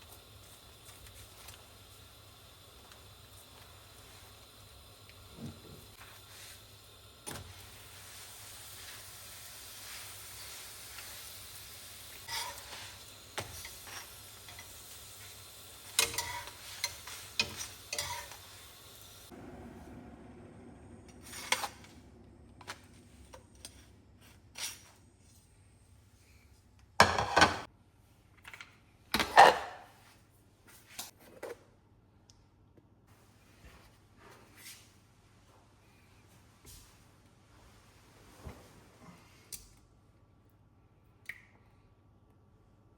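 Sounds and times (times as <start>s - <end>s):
steady hiss: 0.0s - 19.4s.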